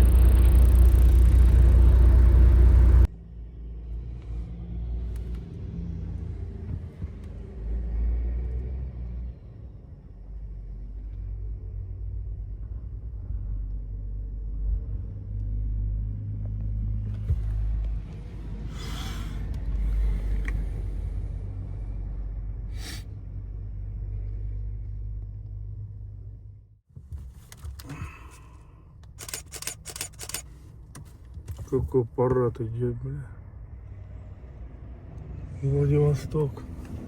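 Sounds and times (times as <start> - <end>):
truck engine rumbling: 0.0 - 3.1
sharp clicks: 29.0 - 31.1.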